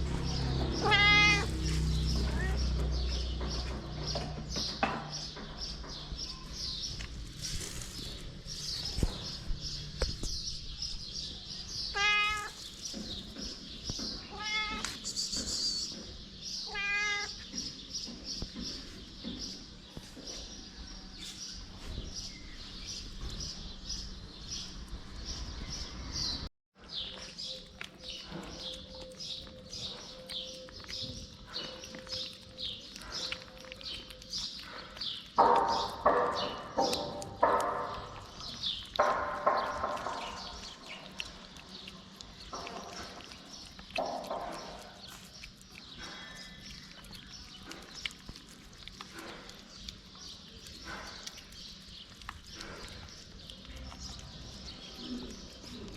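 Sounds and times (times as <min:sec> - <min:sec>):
cats meowing: 0:00.6 - 0:02.8, 0:11.8 - 0:12.6, 0:14.2 - 0:15.0, 0:16.6 - 0:17.5.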